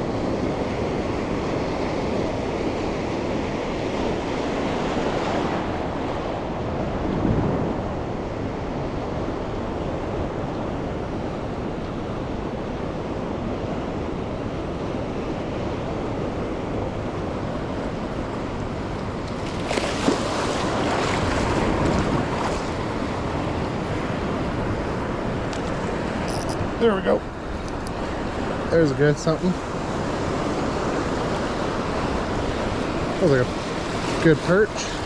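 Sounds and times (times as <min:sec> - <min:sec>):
ocean surf washing onto beach: 0:00.0 - 0:35.0
wind buffeting microphone: 0:04.1 - 0:28.8.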